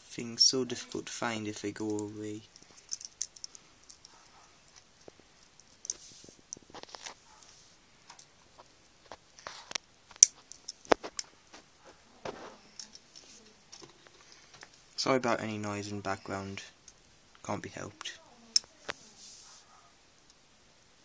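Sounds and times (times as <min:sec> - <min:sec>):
soft rustle: 0:00.7 - 0:15.0, 0:17.9 - 0:20.0
plastic parts clicking and tapping: 0:01.8 - 0:04.2.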